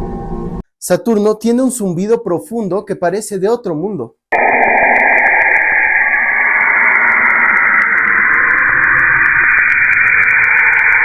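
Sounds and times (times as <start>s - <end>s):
static-like hiss: 4.4s - 11.0s.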